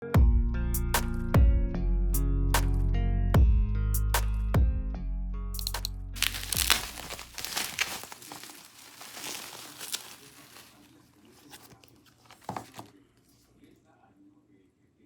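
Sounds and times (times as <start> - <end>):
packaging crinkling and rustling: 5.6 - 12.9.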